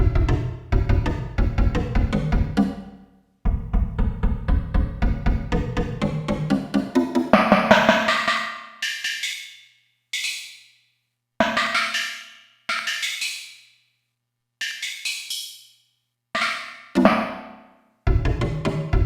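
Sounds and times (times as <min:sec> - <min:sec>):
synthesizer percussive notes: 0:00.0 - 0:02.7, 0:03.5 - 0:08.2, 0:18.1 - 0:19.0.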